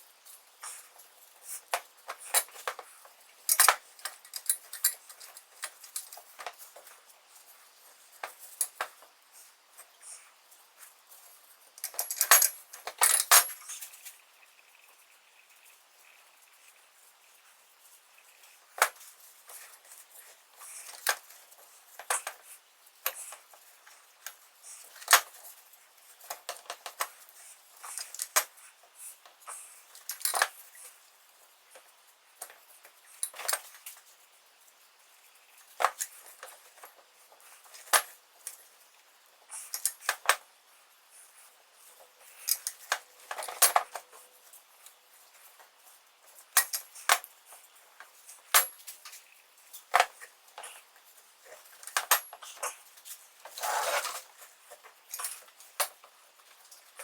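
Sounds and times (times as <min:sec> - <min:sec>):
metal tools clinking: 0:11.8 - 0:13.8.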